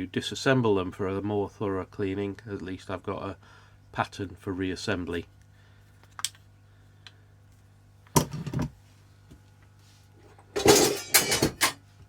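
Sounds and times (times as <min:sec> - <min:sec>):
hand tools clattering on hard surface: 0:10.6 - 0:11.8.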